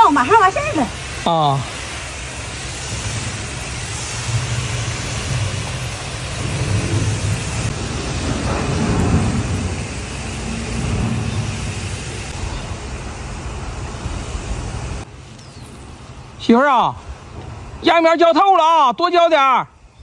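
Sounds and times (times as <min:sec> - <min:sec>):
water spraying from a hose: 0:00.0 - 0:20.0
wind rumbling on microphone: 0:02.5 - 0:16.4.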